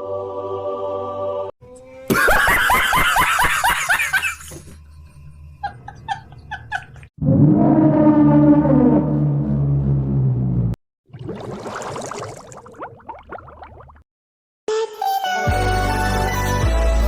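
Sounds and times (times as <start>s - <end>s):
rapid cackling laughter: 2.1s - 4.9s, 5.6s - 7.1s.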